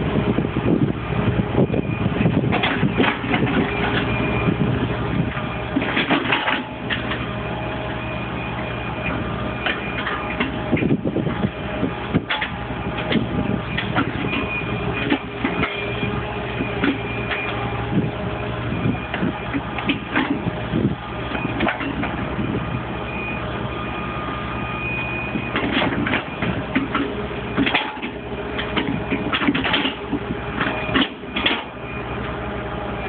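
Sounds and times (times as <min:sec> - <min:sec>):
excavator engine running: 0:00.0 - 0:33.0.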